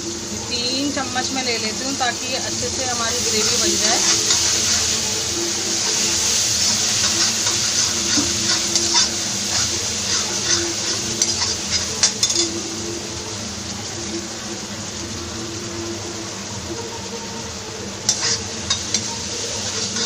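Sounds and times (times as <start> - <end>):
gravy sizzling in a frying pan: 0.0 - 20.0
spoon scraping a pan: 3.1 - 12.6, 18.0 - 20.0.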